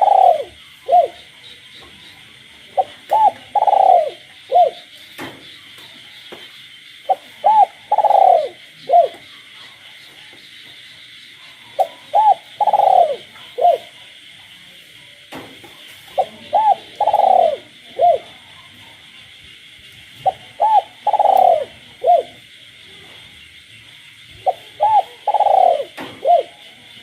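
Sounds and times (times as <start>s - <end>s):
dove cooing: 0.0s - 1.5s, 2.7s - 4.9s, 7.0s - 10.3s, 11.4s - 14.0s, 16.1s - 18.7s, 20.2s - 22.6s, 24.3s - 27.0s
frogs chorus: 0.0s - 27.0s.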